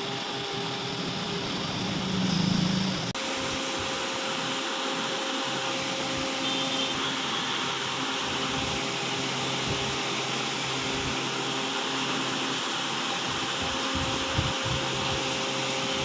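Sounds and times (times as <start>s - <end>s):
low hum: 0.0s - 3.2s.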